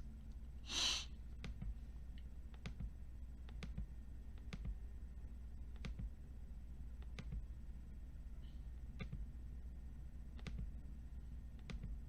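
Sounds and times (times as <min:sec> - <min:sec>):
low steady hum: 0:00.0 - 0:12.0
short hiss: 0:00.7 - 0:01.1
computer mouse clicks: 0:05.7 - 0:06.1.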